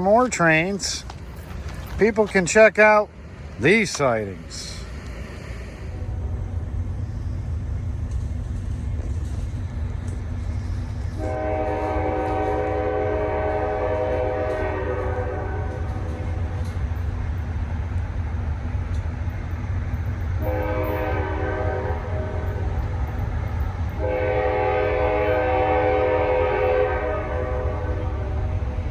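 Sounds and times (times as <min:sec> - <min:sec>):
train rumble: 0:00.0 - 0:28.9
locomotive air horn: 0:11.2 - 0:16.5, 0:20.4 - 0:22.8, 0:24.0 - 0:28.6.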